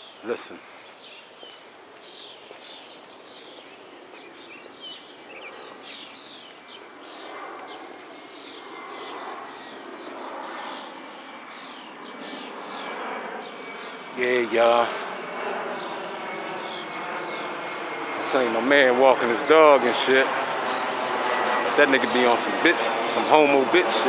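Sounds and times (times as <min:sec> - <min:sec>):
birds chirping: 0:00.0 - 0:24.0.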